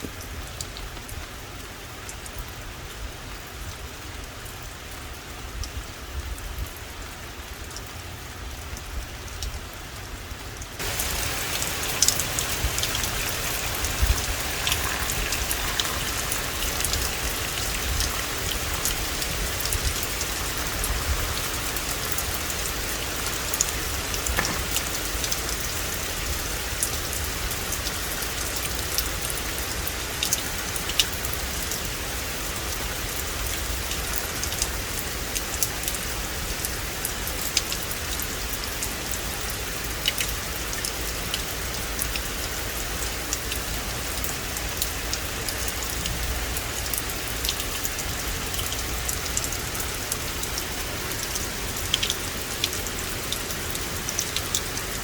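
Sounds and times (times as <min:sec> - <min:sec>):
raindrops ticking nearby: 0:00.0 - 0:55.0
steady rain hiss: 0:00.0 - 0:55.0.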